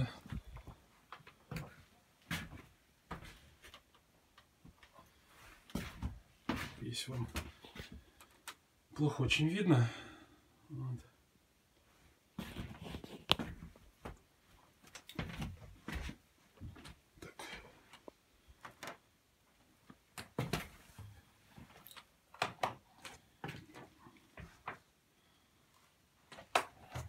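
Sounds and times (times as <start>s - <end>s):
footsteps on wooden boards: 5.6s - 8.0s, 15.1s - 17.0s.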